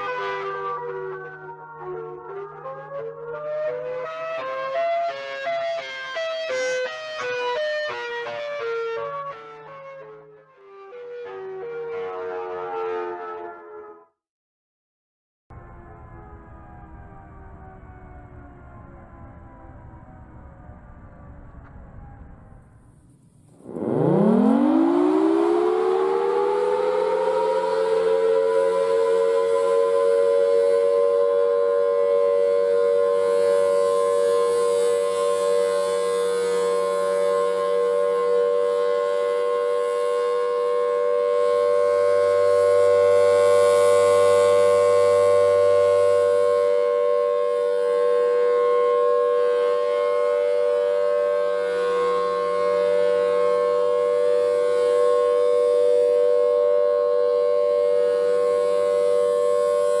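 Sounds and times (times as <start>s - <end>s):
siren steady tone: 0.0s - 14.2s, 15.5s - 60.0s.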